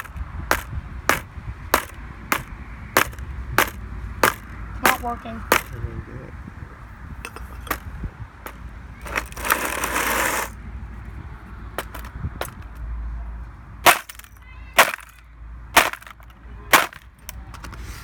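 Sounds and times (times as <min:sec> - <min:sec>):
laptop being smashed: 0:13.8 - 0:15.2, 0:15.8 - 0:17.1.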